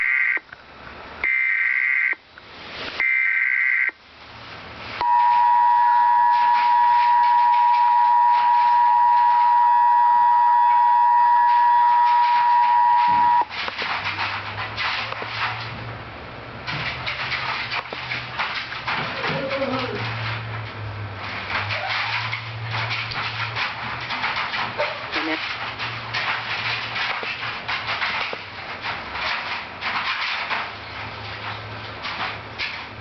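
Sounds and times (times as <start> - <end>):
buzzing data screech: 1.2 - 2.2, 3.0 - 4.0, 5.0 - 13.5
loud steady dual tone: 5.0 - 13.5.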